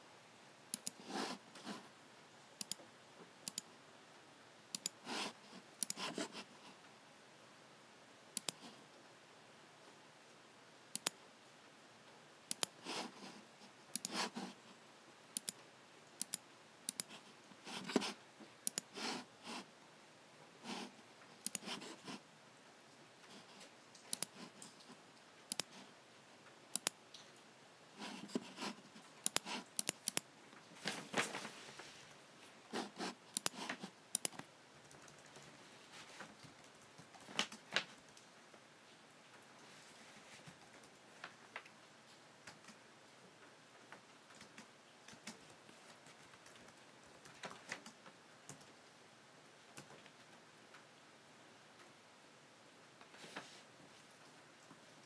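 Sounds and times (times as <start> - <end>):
computer mouse buttons clicking: 0.7 - 1.0, 2.6 - 2.8, 3.4 - 3.7, 4.7 - 5.0, 5.8 - 6.4, 8.4 - 8.7, 10.9 - 11.2, 12.5 - 12.8, 13.9 - 14.3, 15.3 - 15.6, 16.2 - 17.2, 17.8 - 19.0, 21.4 - 21.8, 24.1 - 24.4, 25.5 - 25.8, 26.7 - 27.0, 29.2 - 30.3, 33.3 - 35.4.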